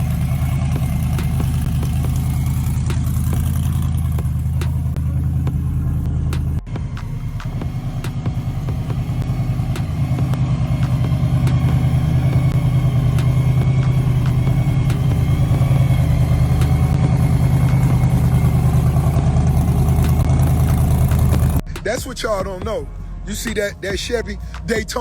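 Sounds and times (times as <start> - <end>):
car engine lumpy idle: 0.0 - 24.0.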